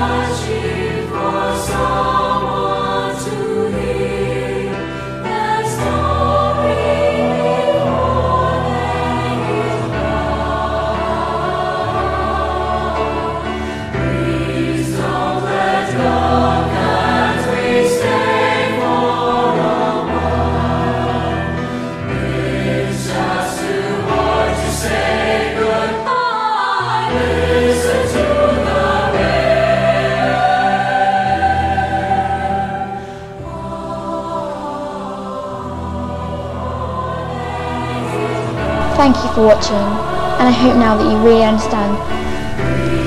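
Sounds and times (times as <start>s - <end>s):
slow choral singing: 0.0s - 43.0s
sustained low notes: 38.7s - 43.0s.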